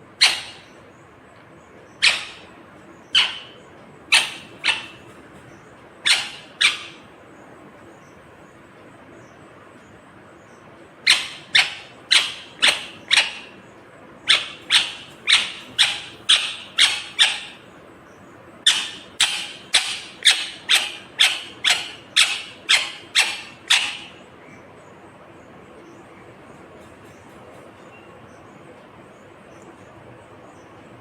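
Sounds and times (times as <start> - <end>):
parakeet screeching calls: 0.2 - 0.8, 1.9 - 5.2, 6.0 - 7.1, 11.0 - 13.6, 14.3 - 17.6, 18.6 - 24.2.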